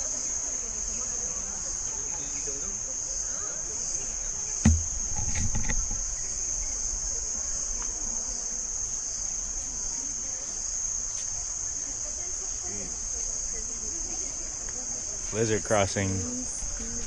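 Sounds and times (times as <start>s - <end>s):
single thump: 4.6s - 6.0s.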